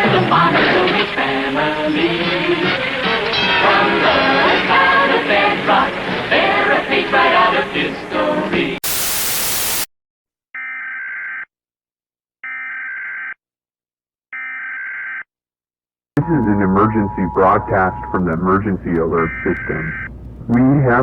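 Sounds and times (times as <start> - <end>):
music with singing: 0.0 - 8.8
buzzy digital data tones: 8.8 - 9.9
static hiss: 8.8 - 9.9, 17.5 - 21.0.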